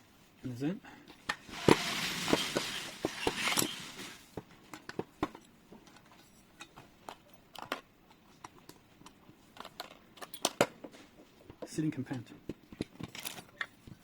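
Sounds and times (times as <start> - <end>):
rustling: 1.2 - 4.5.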